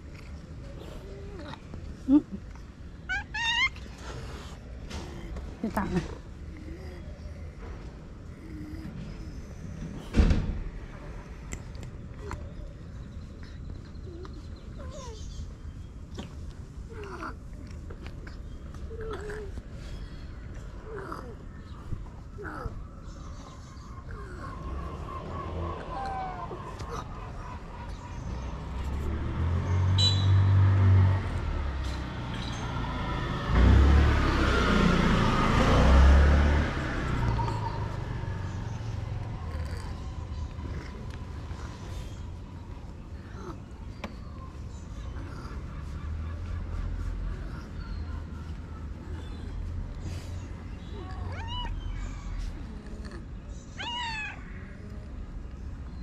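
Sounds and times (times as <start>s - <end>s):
cat meowing: 3.1s - 3.8s, 50.9s - 52.1s, 53.8s - 54.6s
vehicle passing by: 23.4s - 43.6s, 44.4s - 53.2s.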